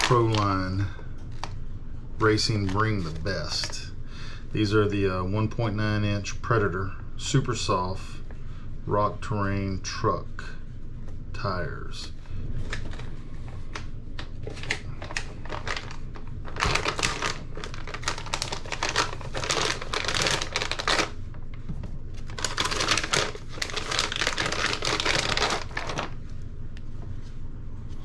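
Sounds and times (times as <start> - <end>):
plastic rustling: 0.0 - 1.6, 12.5 - 26.4.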